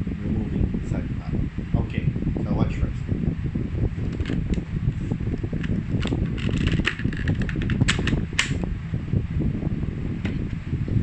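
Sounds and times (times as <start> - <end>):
low rumble: 0.0 - 11.0
plastic visor clicks and snaps: 5.6 - 8.6.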